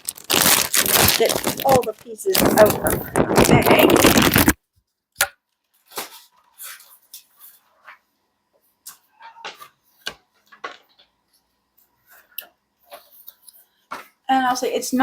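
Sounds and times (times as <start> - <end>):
cardboard packaging being handled: 0.0 - 4.6.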